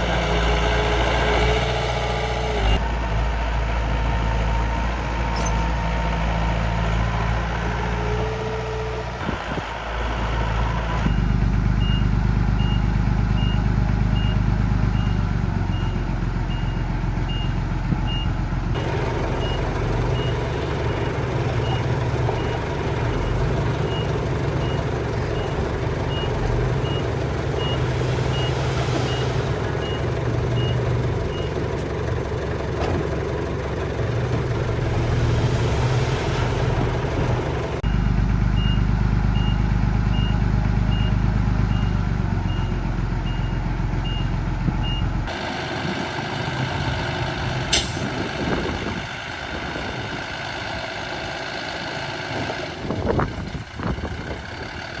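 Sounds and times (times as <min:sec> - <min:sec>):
reversing beeper: 0:25.4 - 0:31.6.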